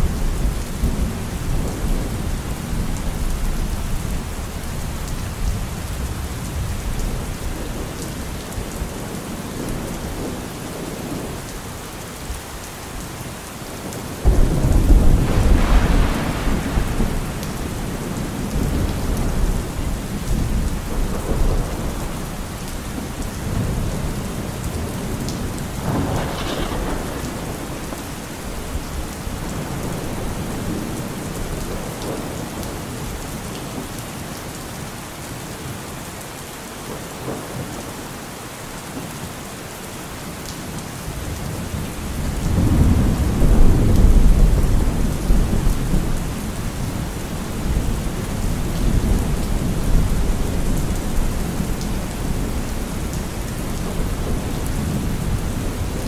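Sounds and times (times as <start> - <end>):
steady rain falling: 0.0 - 56.0
thunder: 14.2 - 32.5, 41.6 - 56.0.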